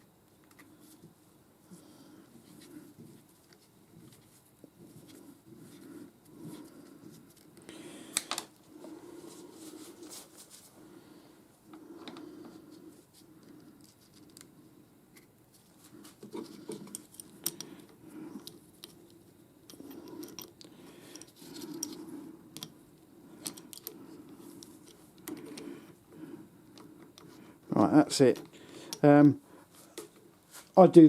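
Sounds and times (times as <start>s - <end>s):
soft handling rustle: 0.4s - 7.7s, 8.3s - 31.0s
metallic clicks and scrapes: 19.7s - 22.7s.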